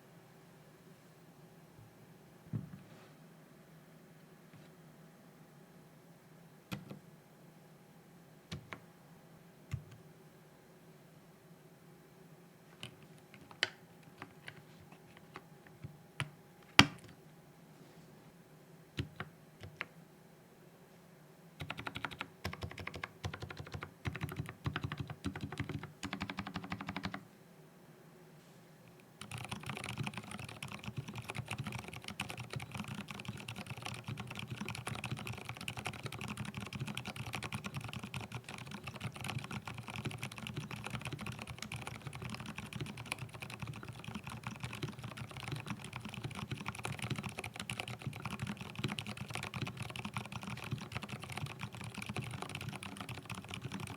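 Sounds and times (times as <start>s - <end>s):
mechanical keyboard typing: 19.0s - 19.9s, 21.6s - 27.2s, 29.2s - 53.9s.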